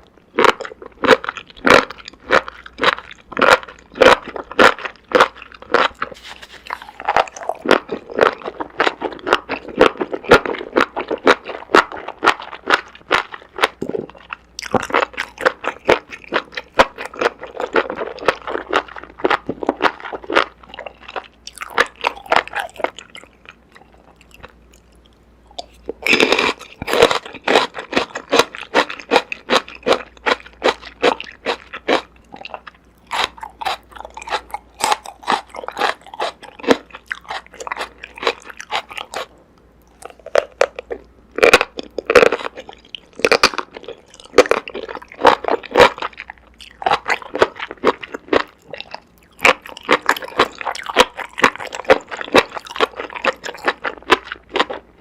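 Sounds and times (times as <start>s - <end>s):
crisp crunching and chewing: 0.0s - 55.0s.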